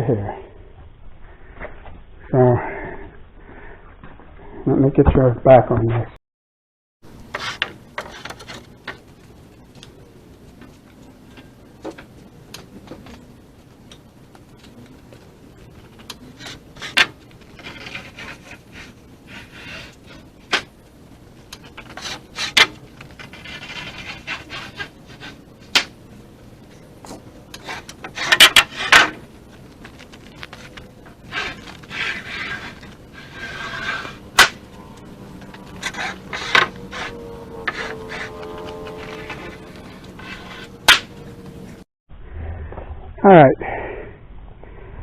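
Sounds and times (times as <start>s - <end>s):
planks scraping together: 7.3s - 9.1s, 15.8s - 20.7s, 21.5s - 26.0s, 27.0s - 34.8s, 35.4s - 41.8s.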